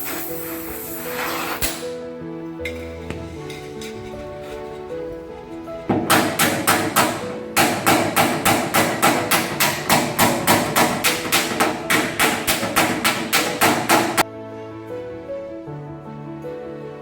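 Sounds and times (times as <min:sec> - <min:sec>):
background music: 0:00.0 - 0:17.0
hammer beating sheet metal: 0:05.9 - 0:14.2.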